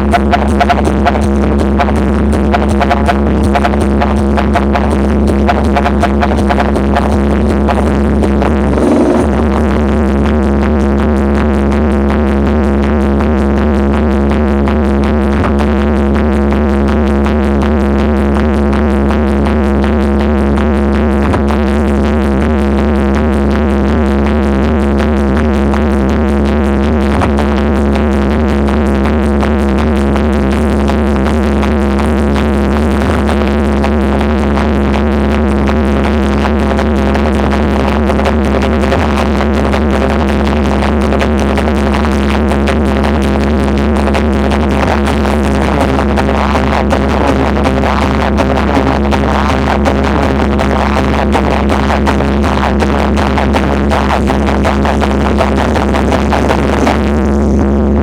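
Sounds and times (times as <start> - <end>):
electronic dance music: 0.0 - 9.6, 36.5 - 58.0.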